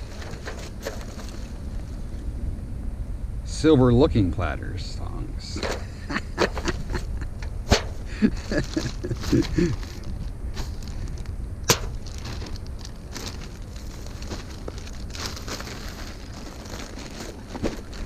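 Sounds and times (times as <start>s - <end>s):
low rumble: 0.0s - 18.0s
sharp metal clanks: 11.6s - 12.0s.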